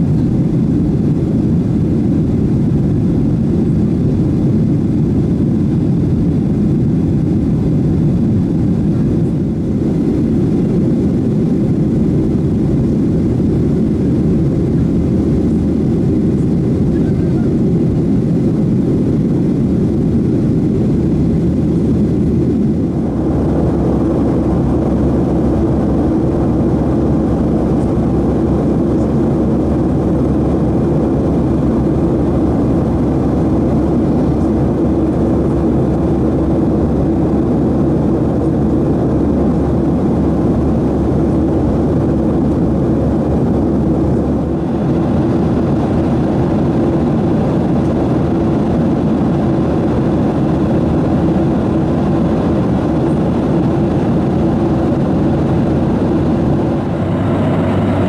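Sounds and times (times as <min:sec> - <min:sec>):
jet engines from cabin: 0:00.0 - 0:58.0
rushing air: 0:19.1 - 0:33.8, 0:53.7 - 0:58.0.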